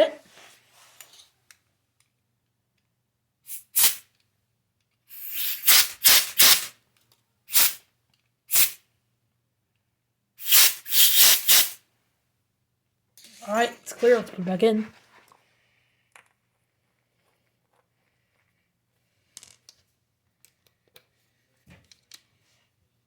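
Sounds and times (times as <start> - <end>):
short hissing air puffs: 3.5 - 4.0, 5.1 - 6.7, 7.5 - 7.8, 8.5 - 8.8, 10.4 - 11.8.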